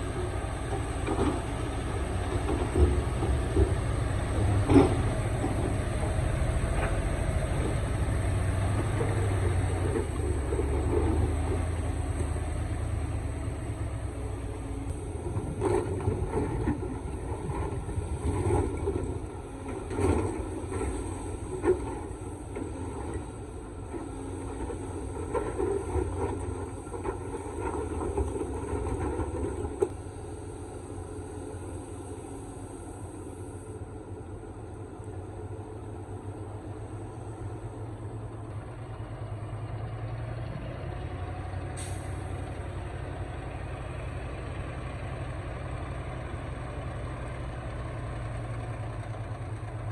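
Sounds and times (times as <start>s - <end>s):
diesel engine running: 0.0s - 49.9s
brief hiss: 41.8s - 42.4s.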